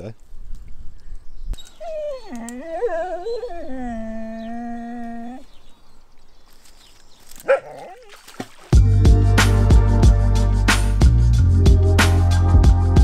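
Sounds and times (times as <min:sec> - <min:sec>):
dog whining: 0:01.6 - 0:05.6, 0:07.4 - 0:08.1.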